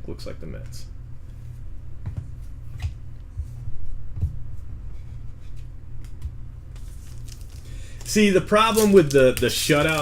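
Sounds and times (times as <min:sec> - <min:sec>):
low electrical hum: 0:00.0 - 0:10.0
trading cards tapping and clicking: 0:07.2 - 0:10.0.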